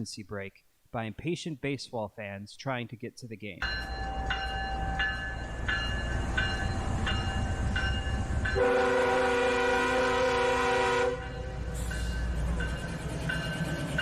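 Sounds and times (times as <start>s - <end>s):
level crossing bell ringing: 3.6s - 8.6s
freight train rumble: 3.6s - 14.0s
locomotive air horn: 8.6s - 11.6s.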